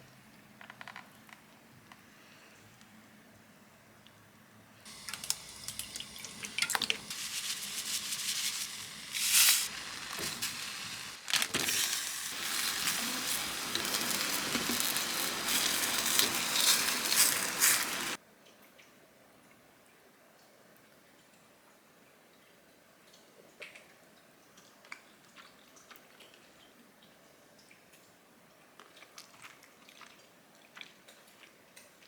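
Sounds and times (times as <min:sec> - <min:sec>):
food sizzling in a pan: 0:04.9 - 0:18.2.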